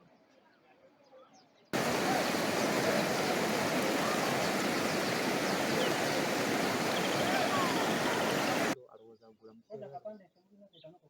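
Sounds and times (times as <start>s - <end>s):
faint chirps: 1.8s - 8.8s
rushing floodwater: 1.8s - 8.8s.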